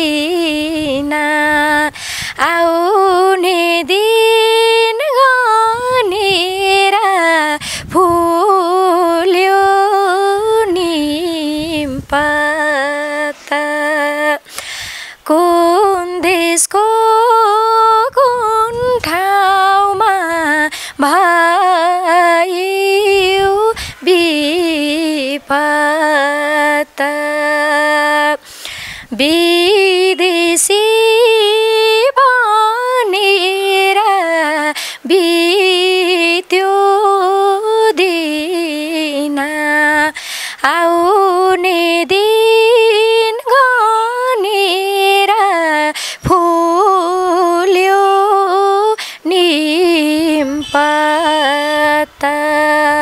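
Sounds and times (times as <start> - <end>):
woman singing unaccompanied: 0.0 - 53.0
singer breathing: 1.9 - 2.4, 7.6 - 8.0, 14.4 - 15.2, 20.7 - 21.0, 23.7 - 24.0, 28.4 - 29.2, 34.8 - 35.0, 40.2 - 40.6, 45.9 - 46.3, 49.0 - 49.3.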